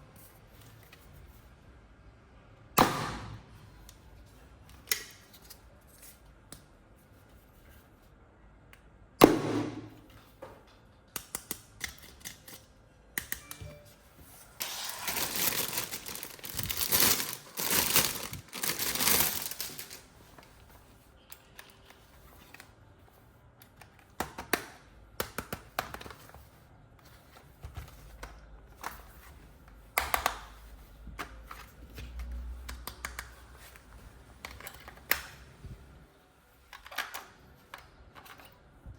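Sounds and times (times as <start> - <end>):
packaging tearing and crinkling: 14.6 - 20.1.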